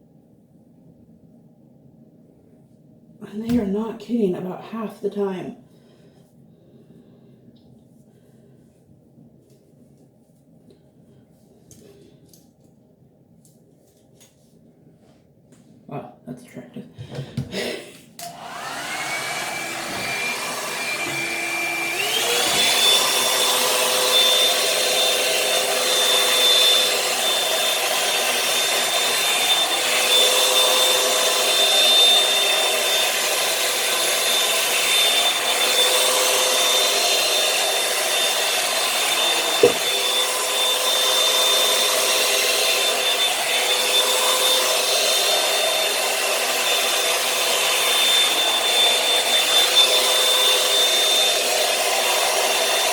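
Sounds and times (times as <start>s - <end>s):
hair dryer brush whine and air: 17.4s - 52.9s
brief knock: 39.6s - 39.8s.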